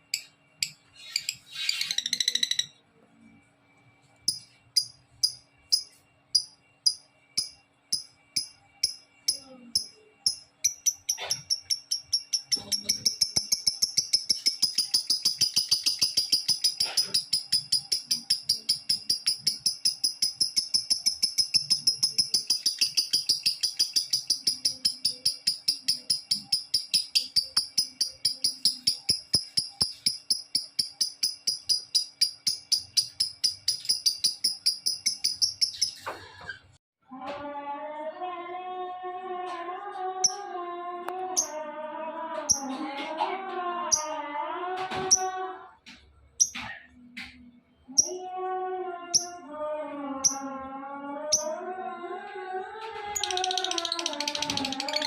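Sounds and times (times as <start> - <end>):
bird trilling high chirps: 0.2 - 2.8, 9.8 - 36.4, 53.2 - 55.0.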